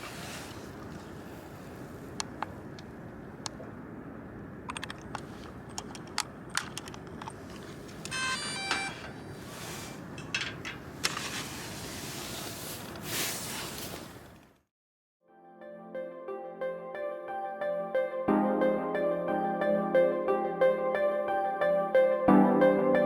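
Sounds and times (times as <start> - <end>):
wind: 0.0 - 14.7
gear clicking and clattering: 4.7 - 9.2.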